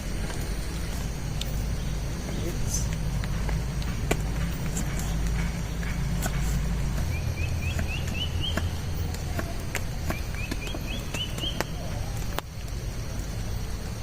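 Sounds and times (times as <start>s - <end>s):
bird chirping: 0.6s - 12.4s.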